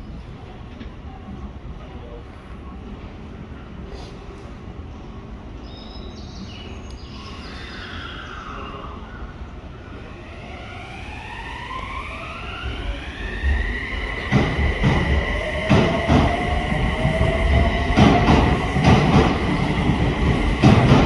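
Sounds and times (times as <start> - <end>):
train traction motors whining: 10.1 - 21.0.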